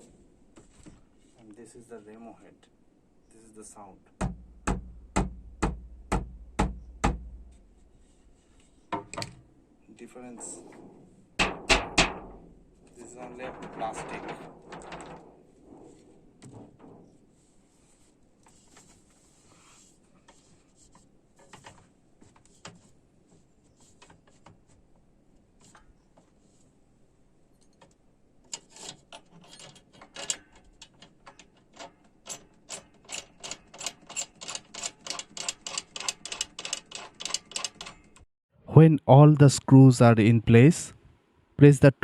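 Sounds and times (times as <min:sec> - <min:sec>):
metal tension rods clicking: 0:28.5 - 0:38.2.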